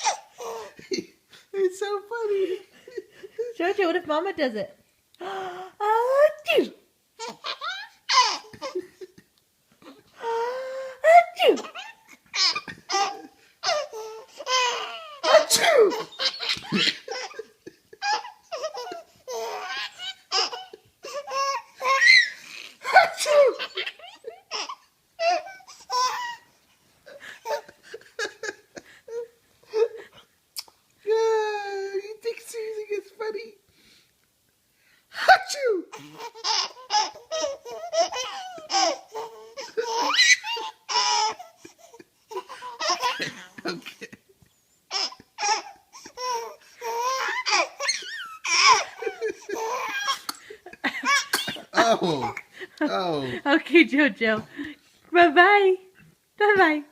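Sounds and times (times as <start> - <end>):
baby laughing: 0.0 - 1.0, 7.2 - 9.2, 9.8 - 26.5, 27.1 - 30.0, 35.5 - 53.4.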